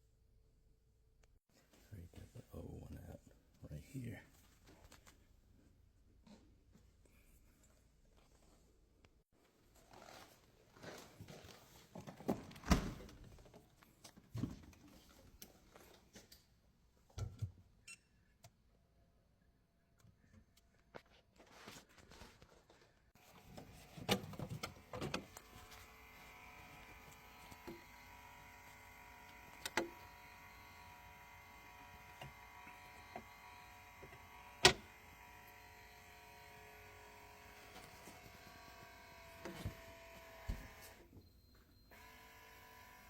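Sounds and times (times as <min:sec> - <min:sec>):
small electric motor humming: 0:24.7 - 0:41.0, 0:41.9 - 0:43.0.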